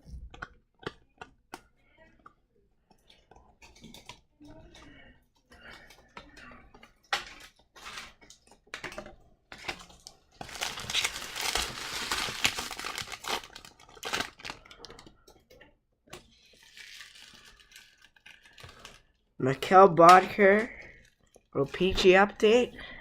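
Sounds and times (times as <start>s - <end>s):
wrapper crinkling: 9.5s - 15.1s, 16.4s - 19.2s.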